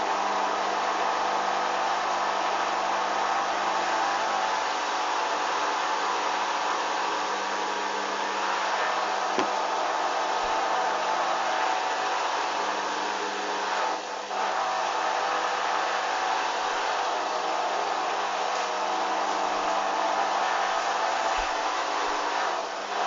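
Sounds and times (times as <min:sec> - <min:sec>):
washing machine running: 0:00.0 - 0:23.0.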